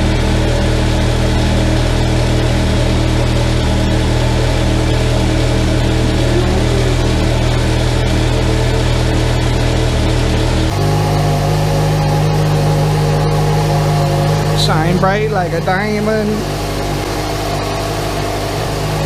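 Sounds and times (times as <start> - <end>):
motorcycle engine idling: 0.0 - 19.0.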